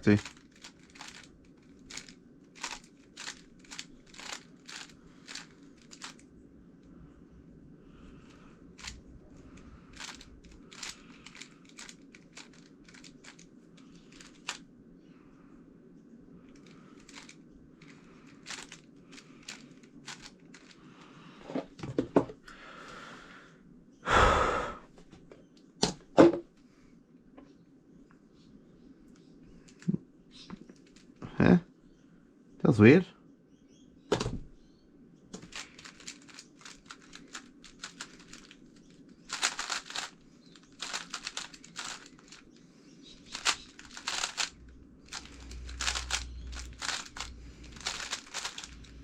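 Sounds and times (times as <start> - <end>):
plastic puzzle cube clicking: 0.1 - 6.2, 8.8 - 9.0, 9.9 - 14.6, 16.6 - 20.8, 35.4 - 42.4, 43.2 - 44.5, 45.1 - 49.0.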